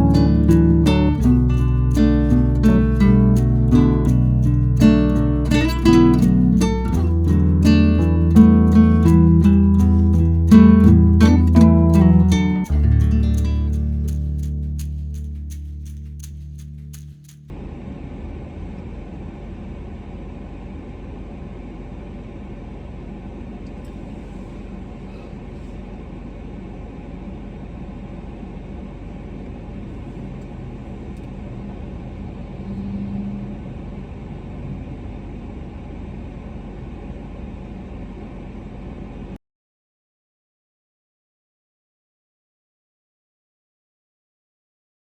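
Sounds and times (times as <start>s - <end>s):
car driving rumble: 0.0s - 17.5s.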